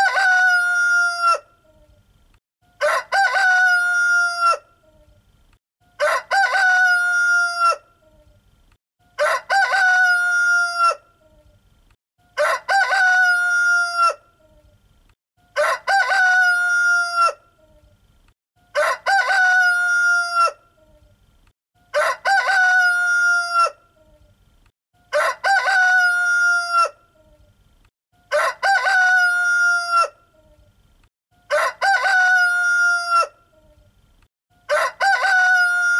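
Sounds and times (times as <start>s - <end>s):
rooster crowing: 0.0s - 1.5s, 2.8s - 4.7s, 6.0s - 7.9s, 9.2s - 11.0s, 12.4s - 14.2s, 15.5s - 17.4s, 18.7s - 20.6s, 21.9s - 23.8s, 25.1s - 27.0s, 28.2s - 30.2s, 31.5s - 33.4s, 34.6s - 35.9s.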